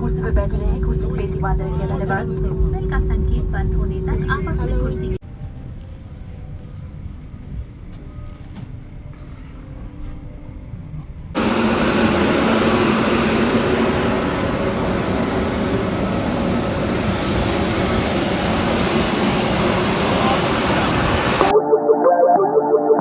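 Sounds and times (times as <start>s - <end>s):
jet engine rush with high whine: 0.0s - 5.2s, 11.4s - 21.5s.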